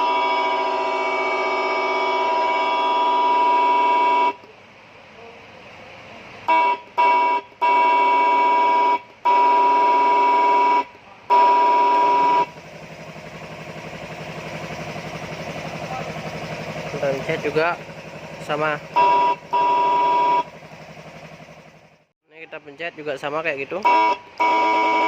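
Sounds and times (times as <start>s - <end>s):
rasping siren horn tone: 0.0s - 4.5s, 6.5s - 12.6s, 18.8s - 20.7s, 23.8s - 25.0s.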